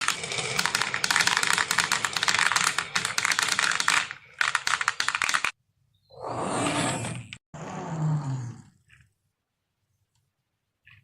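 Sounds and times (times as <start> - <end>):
marbles clattering down a run: 0.0 - 5.5.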